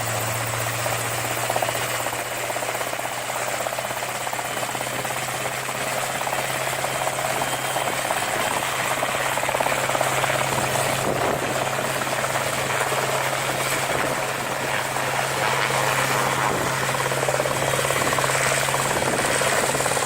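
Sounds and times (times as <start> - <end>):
helicopter running: 0.0 - 20.0.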